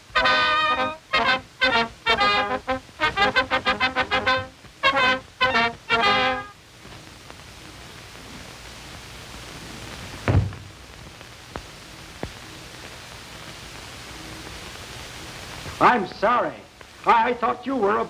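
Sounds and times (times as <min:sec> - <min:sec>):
film soundtrack hiss: 0:00.0 - 0:18.0
dull thump: 0:10.2 - 0:10.8.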